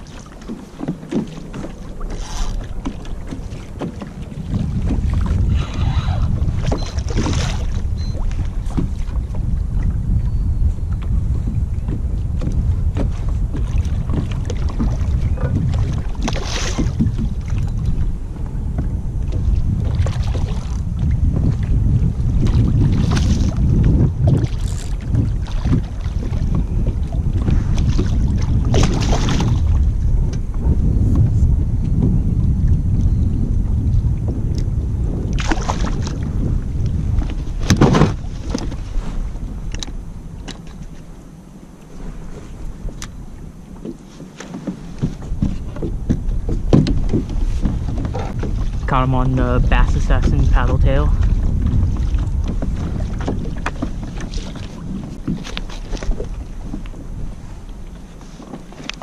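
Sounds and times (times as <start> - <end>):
water splashes: 0.0 - 10.0, 11.0 - 30.3, 35.2 - 59.0
wind buffeting microphone: 0.0 - 59.0
knocks against kayak hull: 37.6 - 38.8, 43.8 - 48.6.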